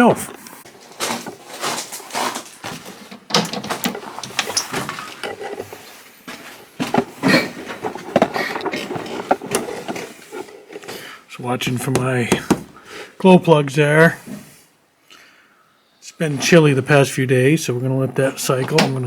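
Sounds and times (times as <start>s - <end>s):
clicks knocks and rattles of handling: 0.3s - 11.0s.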